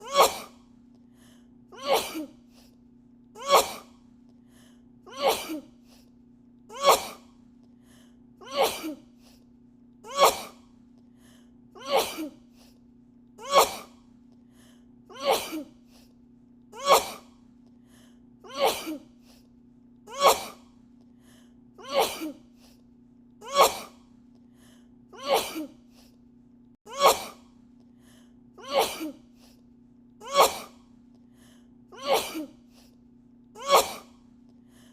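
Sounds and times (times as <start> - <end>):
woman sneezing: 0.0 - 0.6, 1.8 - 2.4, 3.4 - 4.0, 5.1 - 5.7, 6.8 - 7.2, 8.4 - 9.0, 10.1 - 10.6, 11.8 - 12.4, 13.4 - 14.0, 15.2 - 15.7, 16.8 - 17.3, 18.5 - 19.1, 20.1 - 20.7, 21.9 - 22.4, 23.5 - 24.0, 25.2 - 25.8, 26.9 - 27.4, 28.6 - 29.2, 30.2 - 30.8, 32.0 - 32.6, 33.6 - 34.2
steady low hum: 0.0 - 34.9.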